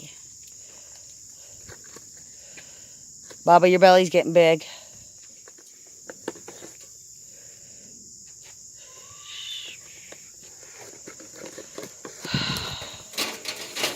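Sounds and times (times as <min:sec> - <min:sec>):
insects chirping: 0:00.0 - 0:13.9
rustling: 0:10.5 - 0:13.9.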